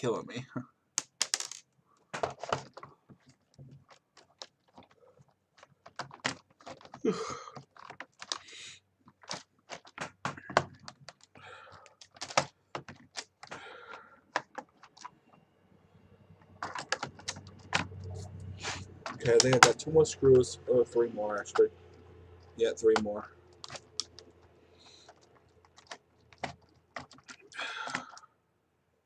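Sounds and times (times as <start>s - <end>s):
plastic keyboard clicks and rattles: 1.0s - 1.6s, 2.2s - 15.2s, 16.5s - 18.2s, 19.0s - 19.8s, 22.8s - 28.2s.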